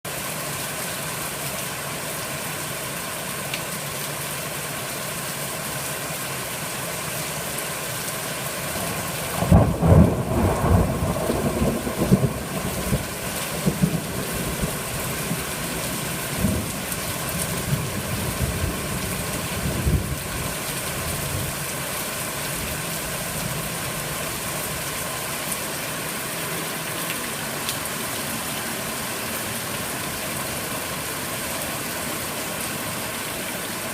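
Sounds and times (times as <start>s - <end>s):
heavy rain: 0.0s - 33.9s
thunder rumbling: 9.3s - 17.0s, 17.6s - 20.5s.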